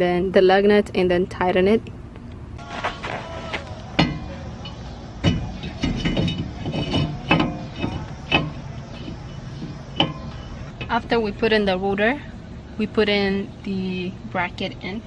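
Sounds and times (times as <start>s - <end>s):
metal tools knocking and clinking: 4.0s - 11.0s.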